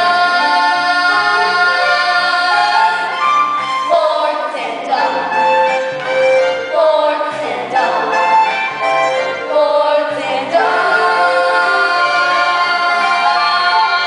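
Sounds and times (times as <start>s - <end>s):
show-tune accompaniment: 0.0s - 14.0s
girls singing held notes: 6.6s - 14.0s.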